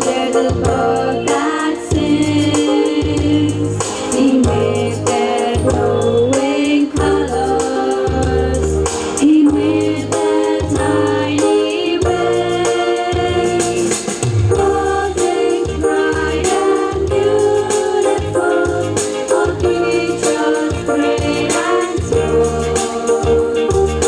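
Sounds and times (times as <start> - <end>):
band with bass and percussion: 0.0 - 24.0
voices singing together: 0.0 - 24.0.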